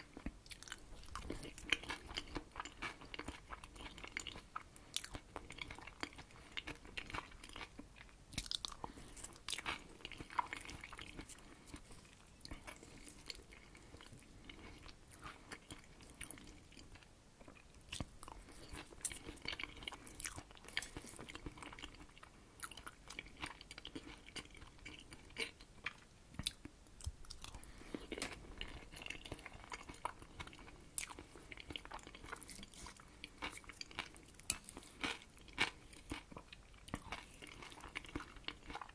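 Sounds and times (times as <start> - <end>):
close chewing with wet mouth sounds: 0.0 - 38.9.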